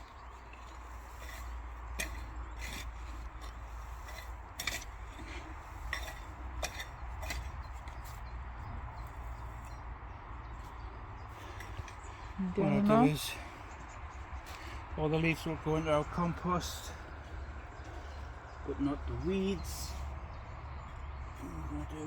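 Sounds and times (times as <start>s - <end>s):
garden fork scraping soil: 0.0s - 8.2s.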